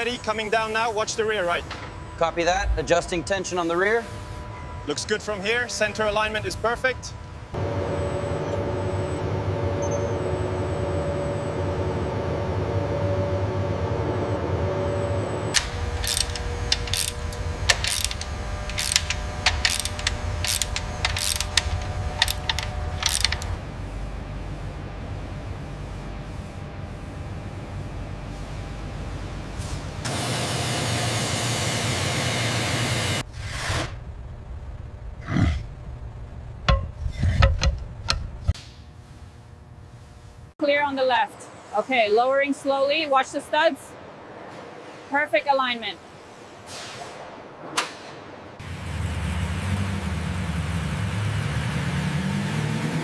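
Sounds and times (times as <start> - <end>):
low factory hum: 0.0 - 53.0
mechanical clicking and ratcheting: 15.6 - 23.6
metallic knocks and clanks: 36.6 - 38.3.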